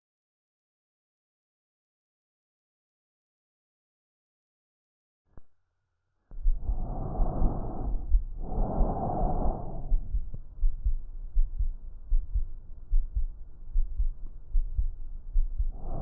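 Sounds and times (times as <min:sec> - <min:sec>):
breath sounds through stethoscope: 0:06.3 - 0:16.0
low heartbeat thuds: 0:06.3 - 0:16.0.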